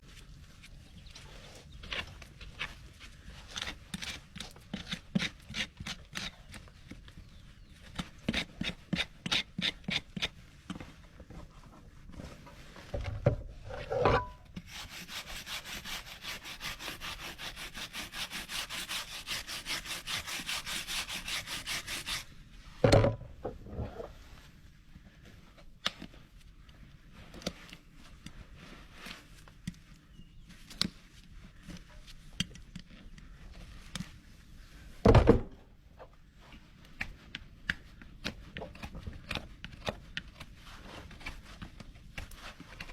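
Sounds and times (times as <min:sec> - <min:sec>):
hoof rasp scraping hoof: 0:01.2 - 0:22.3, 0:23.5 - 0:24.3.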